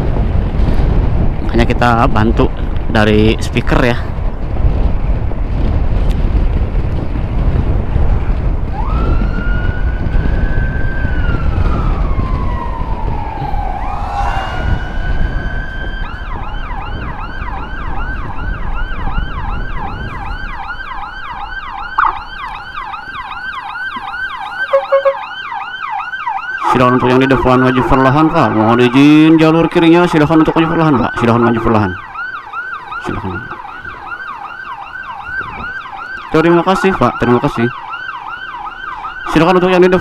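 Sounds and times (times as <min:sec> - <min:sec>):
wind: 0:00.0 - 0:40.0
electronic siren wailing and yelping: 0:08.8 - 0:18.4, 0:19.5 - 0:28.9.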